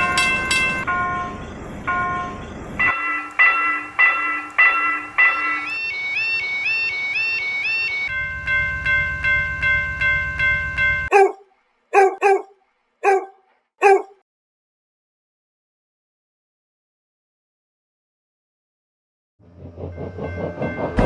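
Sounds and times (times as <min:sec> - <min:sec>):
short bark-like sounds: 0:11.1 - 0:14.2.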